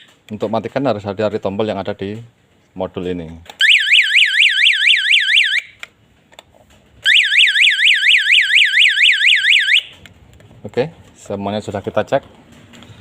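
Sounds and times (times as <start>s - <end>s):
panic alarm siren warbling: 3.6s - 5.7s, 7.0s - 9.9s.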